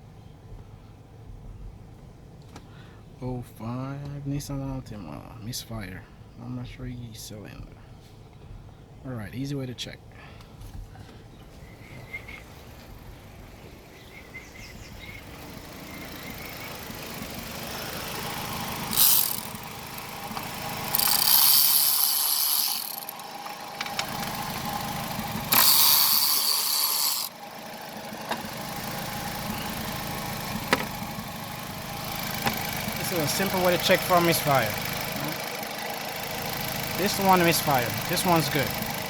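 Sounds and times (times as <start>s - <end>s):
car engine idling with misfire: 10.3s - 39.0s.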